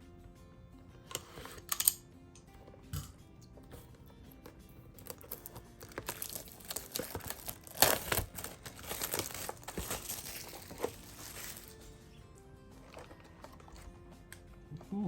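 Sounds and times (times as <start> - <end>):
loud plastic rip: 5.0 - 11.7
plastic wrap crinkling: 5.0 - 11.9.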